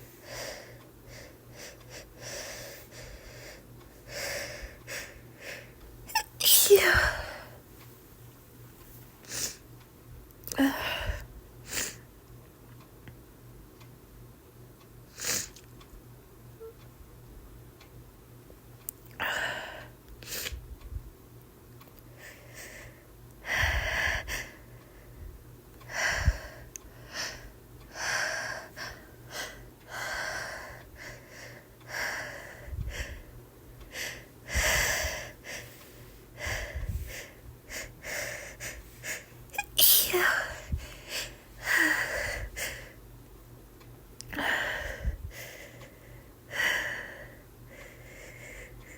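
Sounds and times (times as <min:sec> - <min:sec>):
woman sneezing: 0:06.1 - 0:07.2, 0:39.6 - 0:40.4
woman catching breath: 0:25.9 - 0:33.3.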